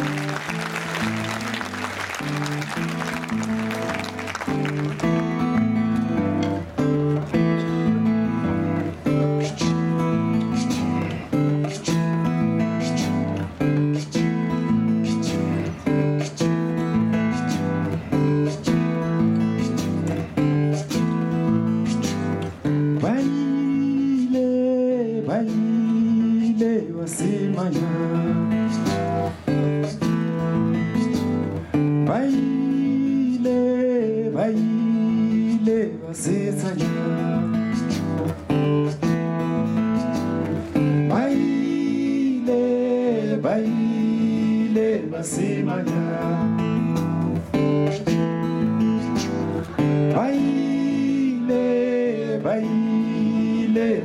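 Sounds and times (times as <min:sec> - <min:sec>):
strummed acoustic guitar: 0:00.0 - 0:54.0
person singing: 0:23.0 - 0:31.3, 0:32.0 - 0:39.1, 0:39.8 - 0:48.2, 0:48.8 - 0:54.0.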